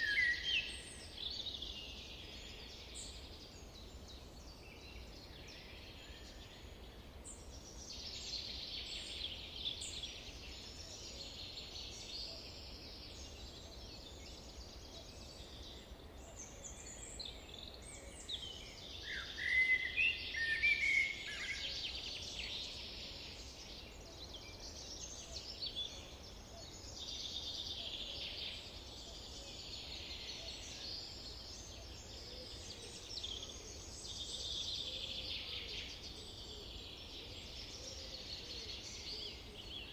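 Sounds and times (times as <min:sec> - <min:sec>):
chorus of songbirds: 0:00.0 - 0:39.9.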